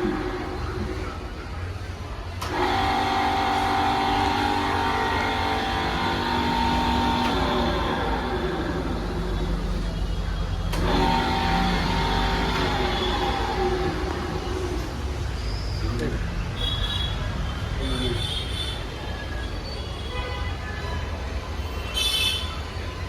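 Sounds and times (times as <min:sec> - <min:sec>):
electric motor humming: 0:02.4 - 0:10.0, 0:10.7 - 0:15.1.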